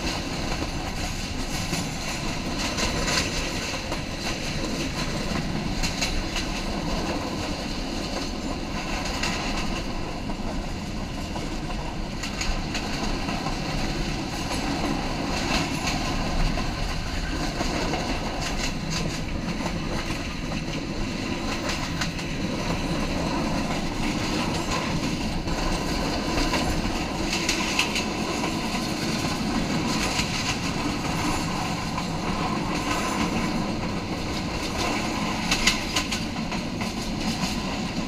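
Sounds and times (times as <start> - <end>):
train rumble: 0.0 - 38.0
wheels clacking over rail joints: 0.0 - 38.0.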